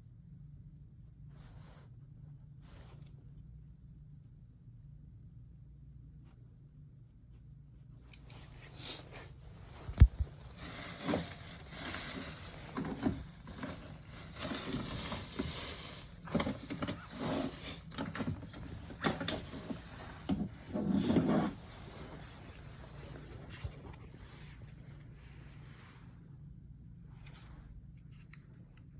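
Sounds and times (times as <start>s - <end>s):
handling scrapes and rustles: 7.8s - 26.3s.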